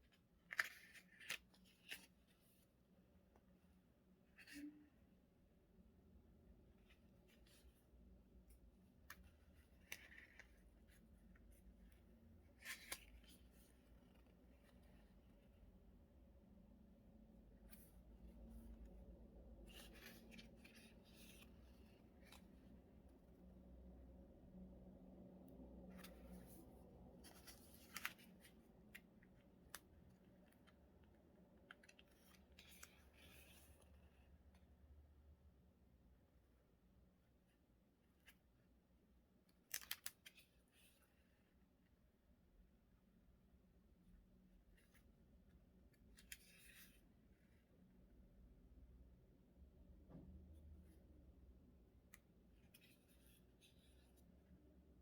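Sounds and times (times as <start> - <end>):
soft paper rustle: 0.0 - 5.2, 6.7 - 15.9, 17.4 - 23.4, 25.6 - 34.8, 39.4 - 42.2, 44.5 - 47.7, 52.0 - 55.0
paper rustling: 9.1 - 15.1, 19.6 - 22.6, 27.2 - 30.8.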